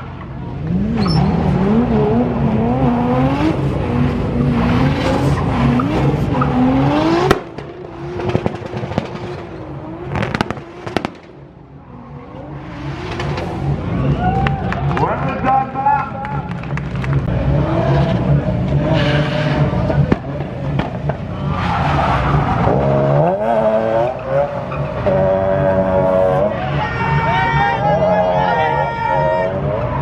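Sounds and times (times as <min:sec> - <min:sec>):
car engine revving: 0:00.0 - 0:30.0.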